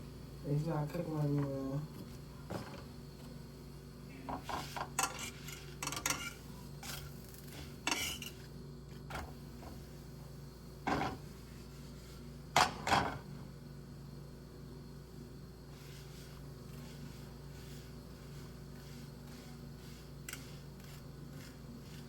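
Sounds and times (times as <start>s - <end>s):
utensils and cookware clattering: 4.3s - 8.5s.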